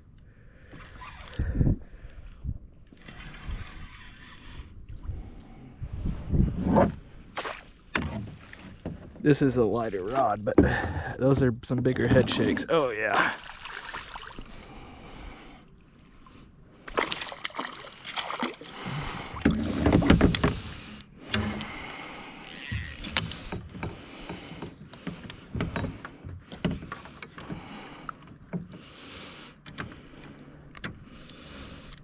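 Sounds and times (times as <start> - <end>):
knocks and clicks in a kayak: 7.8 - 12.7, 18.1 - 32.0
high squeak: 22.4 - 23.2.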